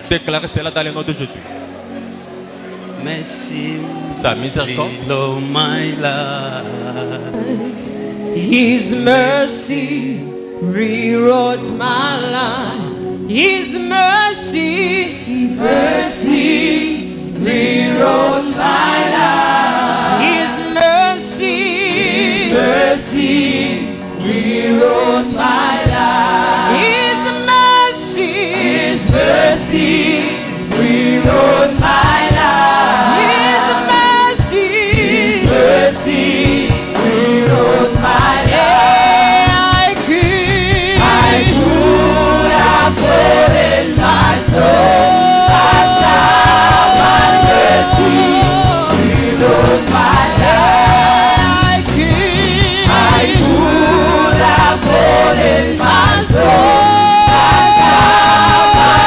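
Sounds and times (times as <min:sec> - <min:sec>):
choir singing gospel: 0:01.5 - 0:59.0
band with drums and bass: 0:28.6 - 0:59.0.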